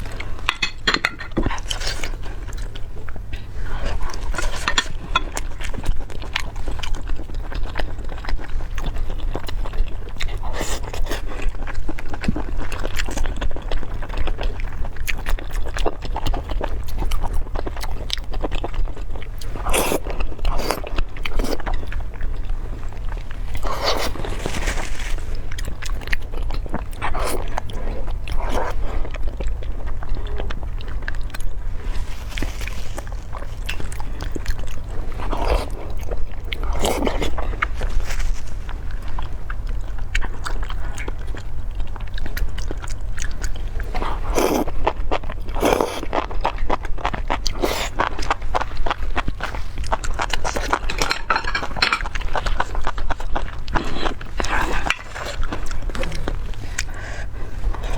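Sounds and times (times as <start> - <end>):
chewing and crunching: 0.0 - 57.9
steady low hum: 0.0 - 57.9.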